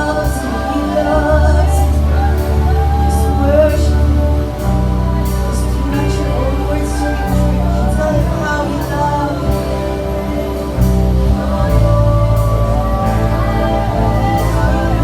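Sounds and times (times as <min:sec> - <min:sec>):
church worship music: 0:00.0 - 0:15.0
heavy bass line: 0:00.0 - 0:15.0.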